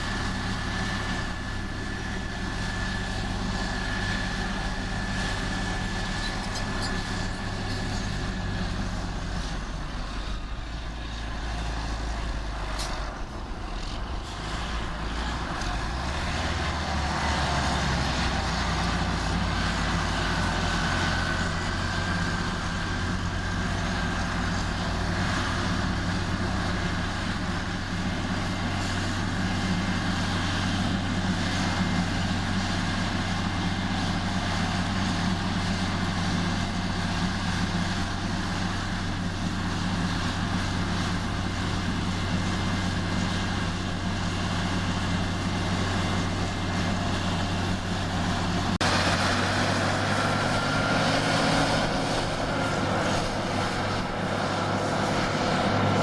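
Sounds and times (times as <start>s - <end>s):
diesel engine running steadily: 0.0s - 56.0s.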